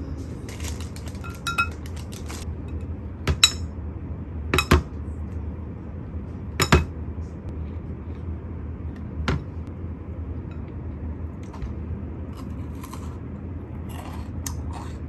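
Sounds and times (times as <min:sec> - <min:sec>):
steady low hum: 0:00.0 - 0:15.0
tableware clinking: 0:01.2 - 0:01.8
dishes knocking: 0:04.6 - 0:04.9, 0:06.6 - 0:06.9.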